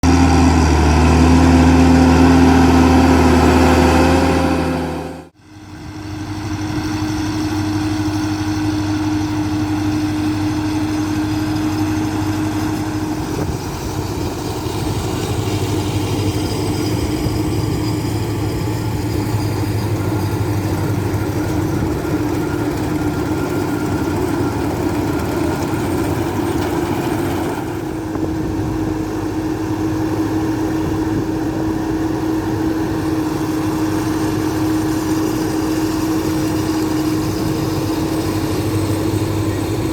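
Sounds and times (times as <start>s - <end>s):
tractor engine droning: 0.0s - 39.9s.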